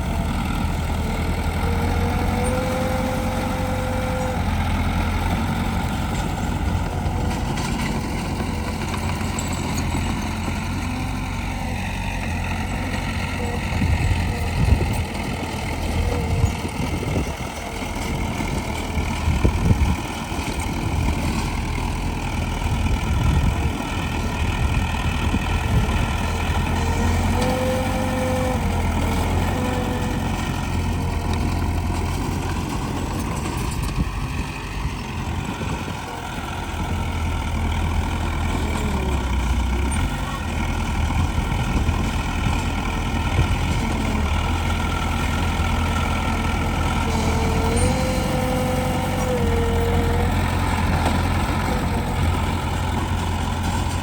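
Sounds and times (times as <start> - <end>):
heavy diesel engines rumbling: 0.0 - 54.0.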